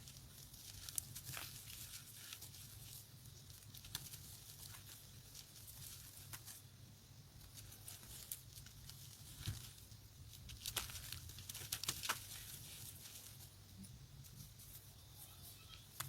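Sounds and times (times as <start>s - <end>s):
chalk crunching and crumbling: 0.0s - 6.8s.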